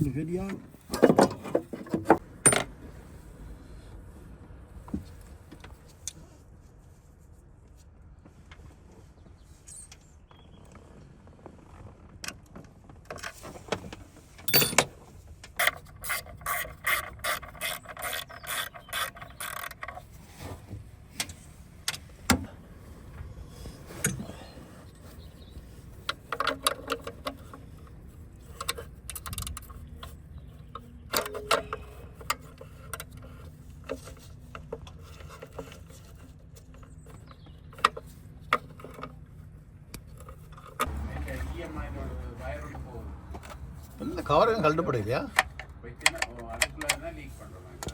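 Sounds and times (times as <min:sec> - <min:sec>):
metal tools clinking: 0:14.4 - 0:15.0.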